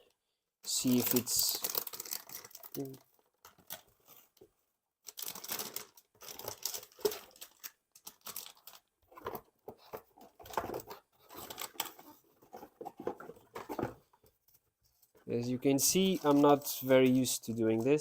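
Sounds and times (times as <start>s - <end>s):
packaging crinkling and tearing: 0.9s - 3.9s, 5.0s - 9.3s, 10.4s - 12.2s.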